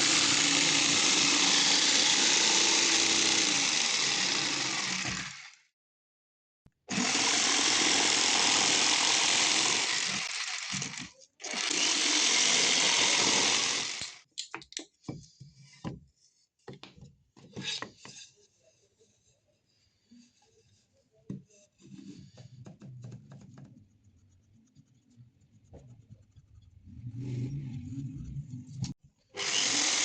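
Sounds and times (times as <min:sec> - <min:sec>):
power tool working wood: 0:00.0 - 0:05.7, 0:06.9 - 0:14.2, 0:29.4 - 0:30.0.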